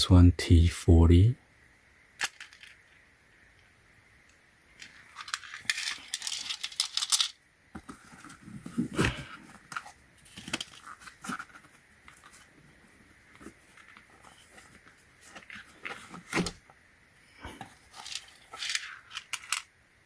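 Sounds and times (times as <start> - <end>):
rustling: 4.7 - 19.7
screwdriver bits clinking and rattling: 4.8 - 7.3, 18.0 - 19.6.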